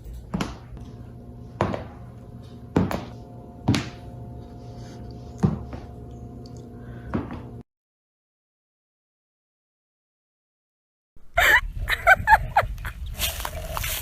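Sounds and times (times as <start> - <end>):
steady hum with held tones: 0.0 - 7.6.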